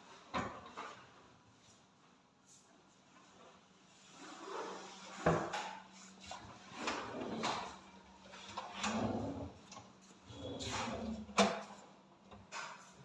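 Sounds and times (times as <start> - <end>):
drawers sliding on runners: 8.6 - 9.5, 10.3 - 11.6.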